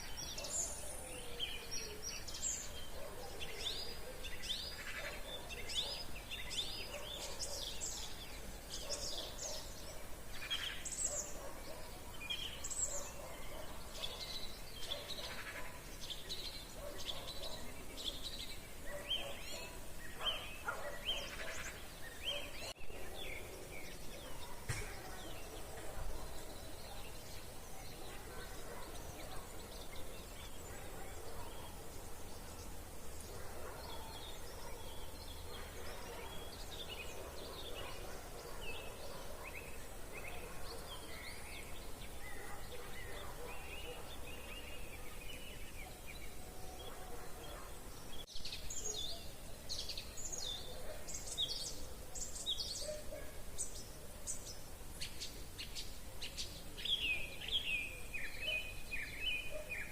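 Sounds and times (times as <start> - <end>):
songbirds singing: 0.0 - 59.9.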